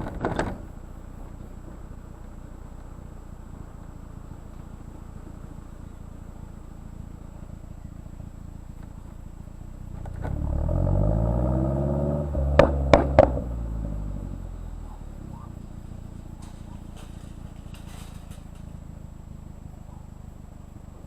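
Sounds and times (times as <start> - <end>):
sharp exhaust pops: 0.0 - 2.0, 8.7 - 20.2
car engine idling and revving: 0.0 - 21.0.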